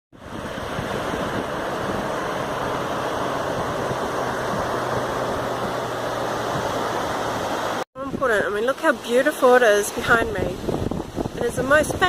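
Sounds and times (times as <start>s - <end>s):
ocean surf waves rushing: 0.2s - 8.1s.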